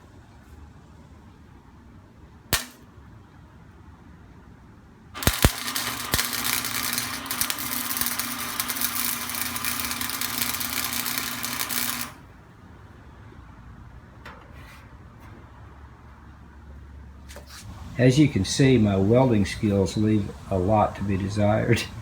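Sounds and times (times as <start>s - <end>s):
welder click: 2.6s - 2.8s, 5.2s - 12.3s
welding arc crackling and sizzling: 2.6s - 2.8s, 5.2s - 12.3s.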